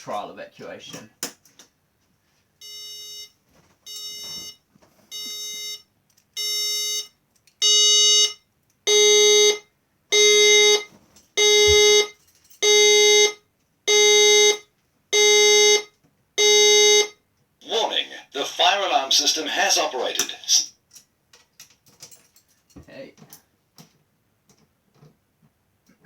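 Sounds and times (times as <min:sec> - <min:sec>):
fire alarm buzzy beeps: 0:02.6 - 0:17.2.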